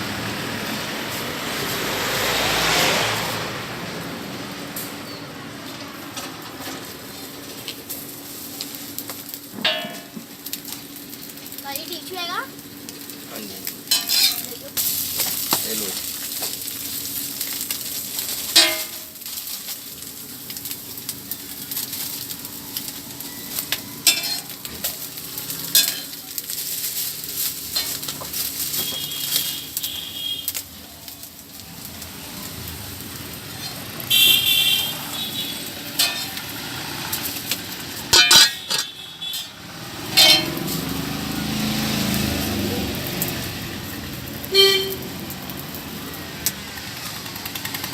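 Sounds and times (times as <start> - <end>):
chicken sizzling in oil: 0.0 - 5.2, 6.0 - 47.9
street traffic: 0.0 - 47.9
metal utensil clinking on pan: 9.6 - 10.2, 13.9 - 14.6, 18.5 - 19.1, 24.0 - 26.2, 35.9 - 36.5, 38.1 - 40.8
car horn toots: 28.7 - 30.6, 34.0 - 35.7, 38.2 - 39.6, 44.5 - 45.1.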